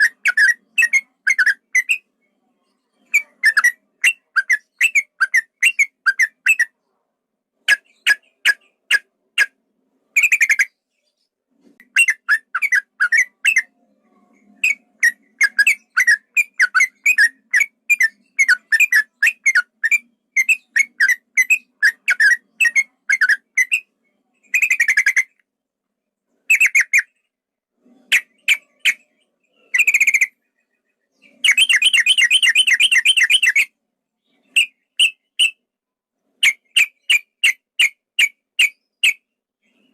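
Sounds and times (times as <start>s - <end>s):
bulbul singing: 28.1s - 35.6s.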